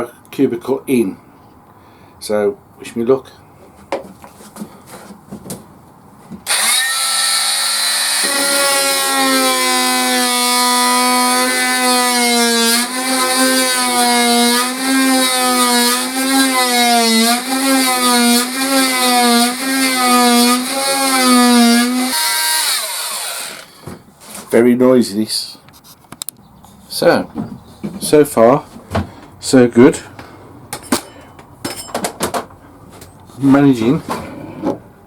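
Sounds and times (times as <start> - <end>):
power saw cutting wood: 6.5 - 23.9.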